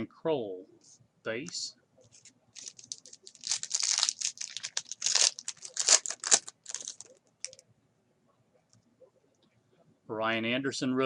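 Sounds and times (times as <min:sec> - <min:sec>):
plastic wrapper tearing and crinkling: 0:02.1 - 0:07.6.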